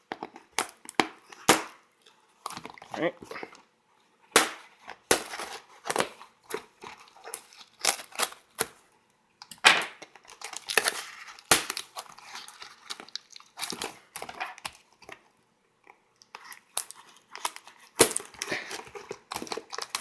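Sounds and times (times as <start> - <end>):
sharp cracks: 4.4 - 5.4, 11.5 - 11.9
packaging crinkling and tearing: 4.4 - 8.8, 10.0 - 15.3, 16.2 - 20.0.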